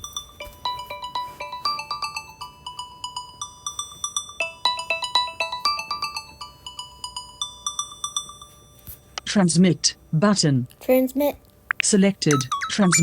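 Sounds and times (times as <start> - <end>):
tinkling bell-like ringtone: 0.0 - 9.2, 12.3 - 13.0.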